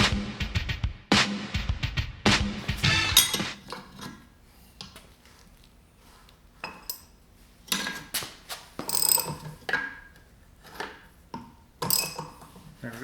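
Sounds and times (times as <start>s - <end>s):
metal tools clanking: 2.6s - 5.0s, 6.6s - 8.2s, 8.8s - 12.8s.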